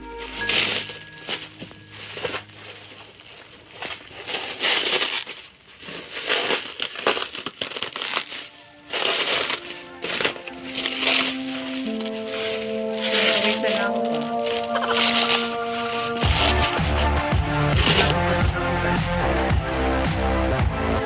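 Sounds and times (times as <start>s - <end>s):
faint background music: 0.0s - 4.9s, 8.1s - 21.0s
packaging rustling and crinkling: 0.5s - 13.2s.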